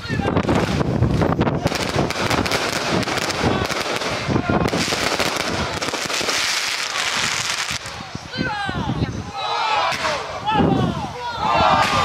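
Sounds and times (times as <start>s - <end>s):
fireworks cracking and banging: 0.2s - 8.0s.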